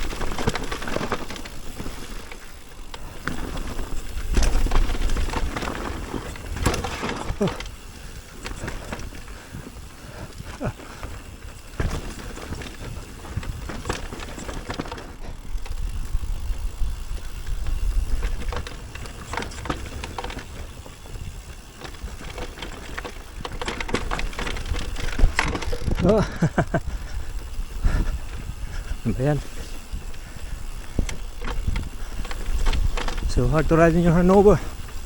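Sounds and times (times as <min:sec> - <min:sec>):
bike clicks and rattles: 0:00.0 - 0:35.0
bike tyres rolling over dirt: 0:00.0 - 0:35.0
wind rumble on microphone: 0:11.7 - 0:35.0.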